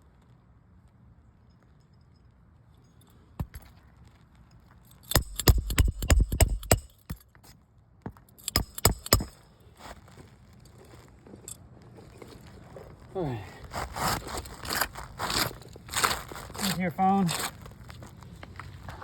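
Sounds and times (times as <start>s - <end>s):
sharp clicks and clinks: 2.8s - 3.8s, 4.9s - 7.2s, 8.3s - 9.4s.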